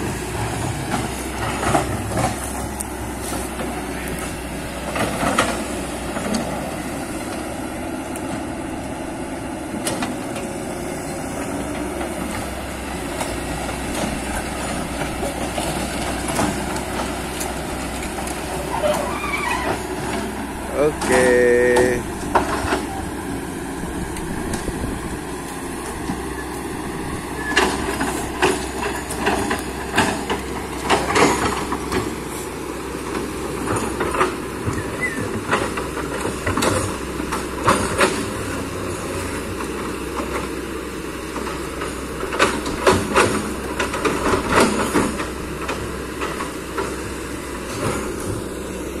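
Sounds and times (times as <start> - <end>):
excavator diesel engine running: 0.0 - 49.0
metal clanks and knocks: 27.4 - 32.4, 33.1 - 38.6.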